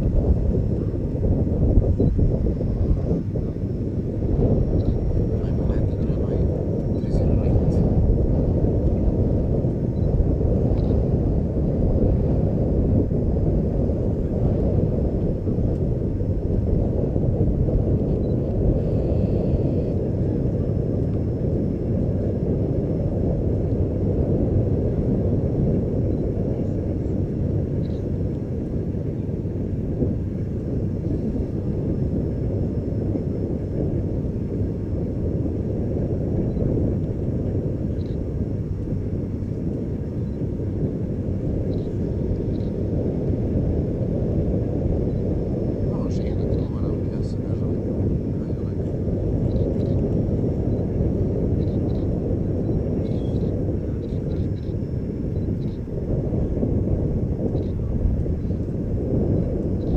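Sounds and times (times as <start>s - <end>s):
turboprop engines droning: 0.0s - 59.9s.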